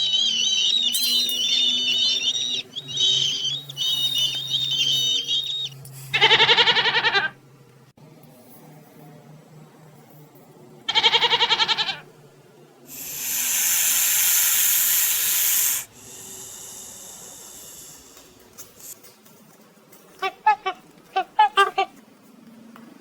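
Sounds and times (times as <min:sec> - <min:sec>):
short chirping calls: 0:00.0 - 0:05.8, 0:12.9 - 0:19.0
animal quavering call: 0:12.9 - 0:18.4
animal hissing: 0:12.9 - 0:19.0.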